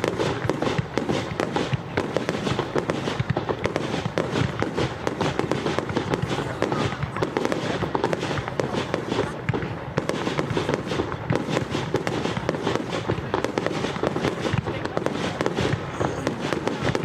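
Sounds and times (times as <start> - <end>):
fireworks bangs and crackling: 0.0 - 17.0.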